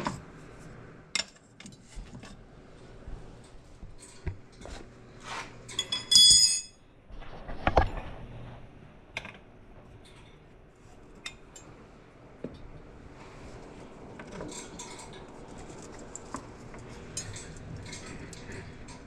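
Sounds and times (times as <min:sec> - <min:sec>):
metal tools clinking and knocking: 0:05.7 - 0:06.8
loud metallic ring: 0:05.8 - 0:06.8.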